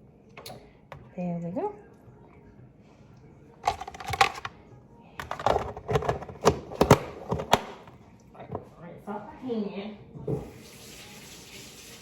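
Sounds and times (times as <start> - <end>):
plastic containers clicking: 3.6 - 4.6, 5.2 - 7.9.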